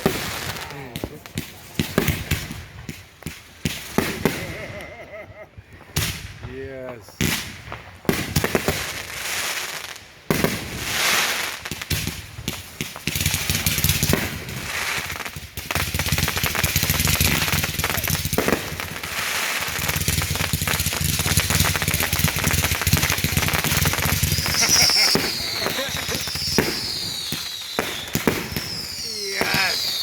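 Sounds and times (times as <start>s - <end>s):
fireworks bangs: 0.0s - 30.0s
fireworks crackling and popping: 0.0s - 30.0s
fireworks hissing: 13.0s - 30.0s.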